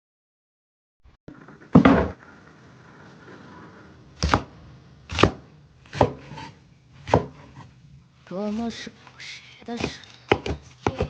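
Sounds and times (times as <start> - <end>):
knife chopping on cutting board: 4.2 - 4.5, 5.1 - 7.7, 9.7 - 11.0.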